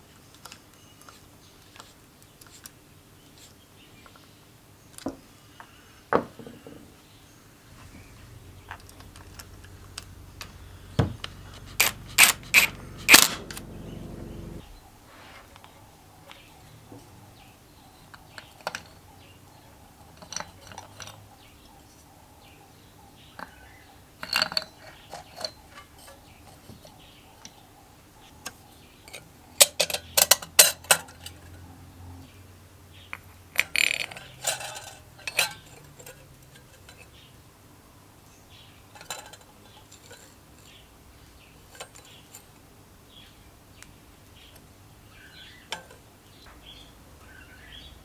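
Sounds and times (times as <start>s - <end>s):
metal parts and tools clinking: 11.3s - 14.2s, 29.1s - 31.6s, 33.5s - 37.1s, 39.0s - 40.8s, 41.7s - 42.5s.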